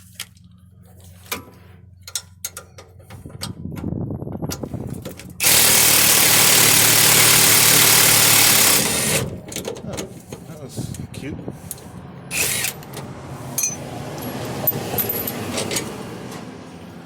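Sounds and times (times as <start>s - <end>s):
impact wrench running: 5.4s - 9.3s, 12.3s - 13.0s.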